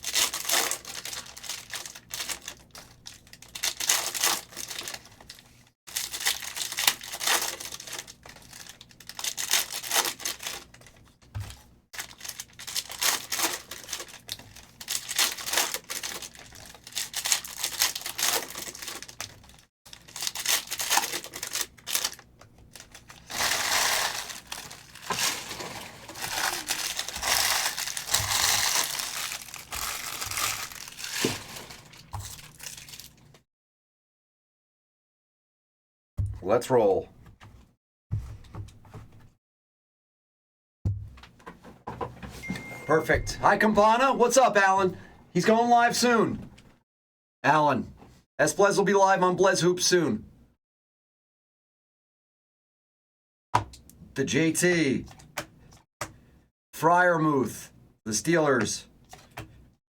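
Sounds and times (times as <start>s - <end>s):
plastic wrappers tearing and crinkling: 0.0s - 11.1s, 12.0s - 33.4s.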